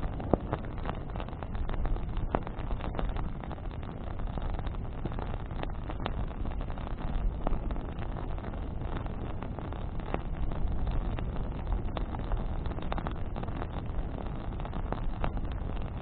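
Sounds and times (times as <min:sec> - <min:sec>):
campfire crackles and pops: 0:00.0 - 0:16.0
fire low rumble: 0:00.0 - 0:16.0.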